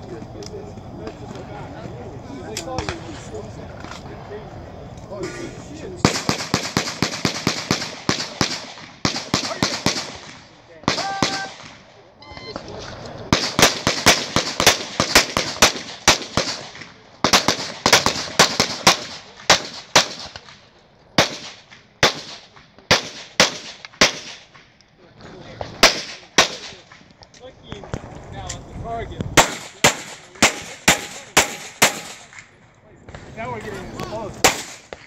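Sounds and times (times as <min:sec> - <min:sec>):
pistol shots: 0:06.0 - 0:11.9, 0:13.3 - 0:20.6, 0:21.2 - 0:24.5, 0:25.8 - 0:26.8, 0:29.4 - 0:32.5, 0:34.4 - 0:35.0.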